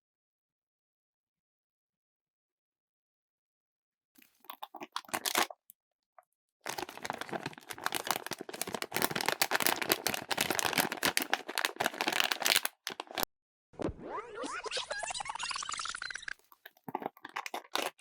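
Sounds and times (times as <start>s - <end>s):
packaging crinkling and tearing: 4.2s - 5.6s, 6.6s - 13.3s, 16.4s - 18.0s.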